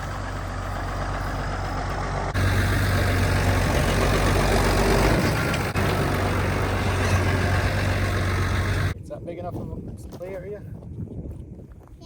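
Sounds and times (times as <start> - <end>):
tractor engine running: 0.0 - 9.0.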